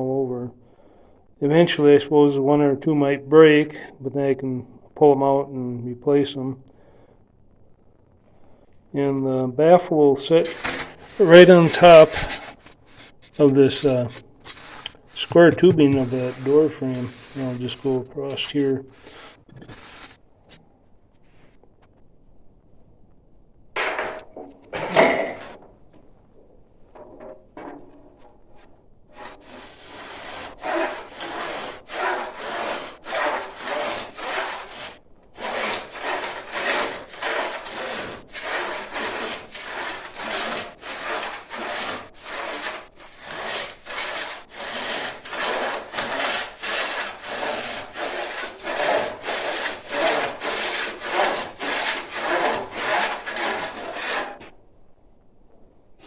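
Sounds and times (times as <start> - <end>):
handsaw cutting board: 10.4 - 17.9, 19.0 - 20.1, 24.8 - 25.4, 29.2 - 54.4.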